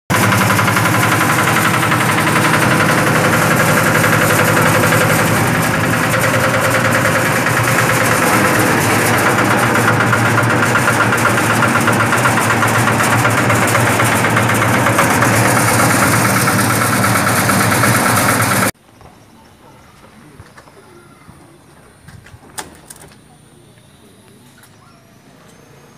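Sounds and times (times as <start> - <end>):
diesel engine running: 0.1 - 18.8.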